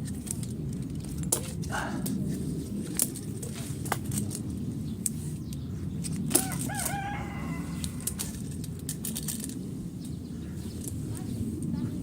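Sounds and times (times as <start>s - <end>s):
steady low rumble: 0.0s - 12.0s
rooster crowing: 6.4s - 8.3s.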